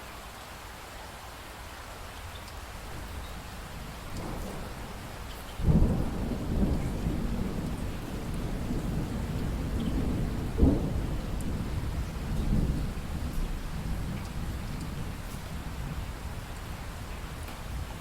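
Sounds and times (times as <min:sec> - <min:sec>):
steady rainfall: 0:00.0 - 0:18.0
thunder rumbling: 0:03.9 - 0:18.0
sharp thunderclap: 0:04.1 - 0:16.0.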